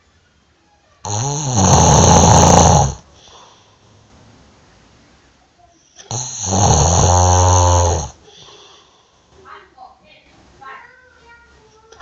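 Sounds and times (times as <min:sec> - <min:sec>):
person snoring loudly: 0:01.1 - 0:03.0, 0:06.1 - 0:08.2
quiet breath: 0:03.0 - 0:04.2, 0:05.6 - 0:06.4, 0:07.3 - 0:09.6.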